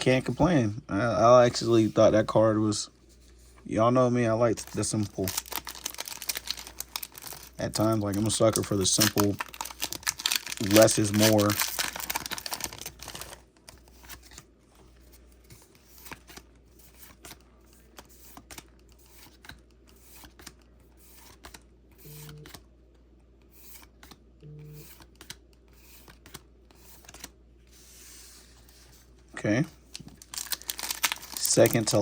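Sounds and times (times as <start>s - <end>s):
trading cards flicking and sliding: 15.4s - 22.6s, 23.4s - 28.1s.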